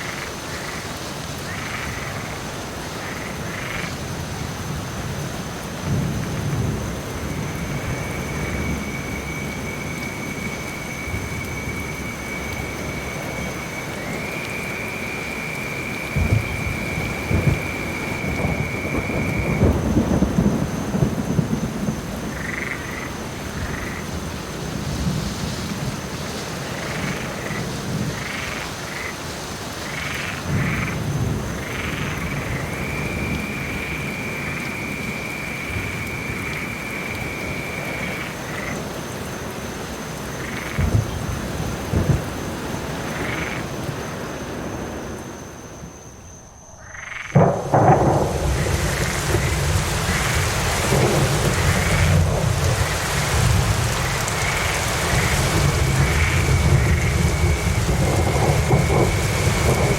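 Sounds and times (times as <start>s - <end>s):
frogs croaking: 0.0s - 59.9s
steady rain: 0.0s - 59.9s
low rumbles of thunder: 3.1s - 14.3s, 15.9s - 26.2s, 30.0s - 38.9s, 40.4s - 45.9s, 47.3s - 59.9s.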